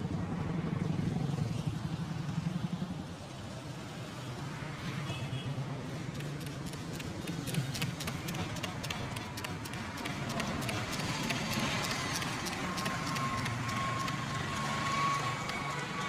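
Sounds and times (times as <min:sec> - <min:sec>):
sharp taps and clicks: 0:06.1 - 0:16.0.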